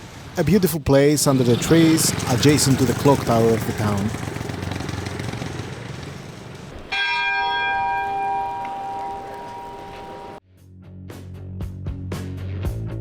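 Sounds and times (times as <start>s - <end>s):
large tower bell ringing: 6.7s - 10.4s.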